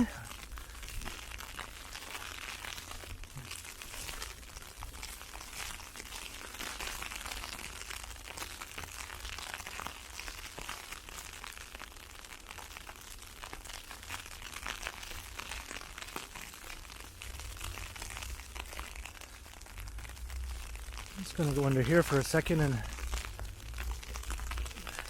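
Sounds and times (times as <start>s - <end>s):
ice pellets hitting umbrella: 0.0s - 25.0s
low rumble: 17.4s - 21.5s, 22.8s - 25.0s.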